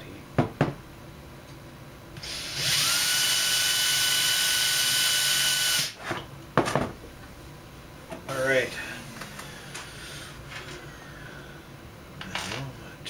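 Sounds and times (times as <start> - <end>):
power tool motor whine: 2.2 - 6.0.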